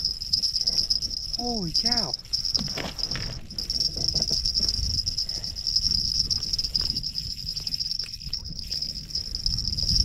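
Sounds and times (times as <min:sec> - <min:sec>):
fishing reel drag buzzing: 0:00.0 - 0:01.4
low rumbling handling noise: 0:02.3 - 0:10.0.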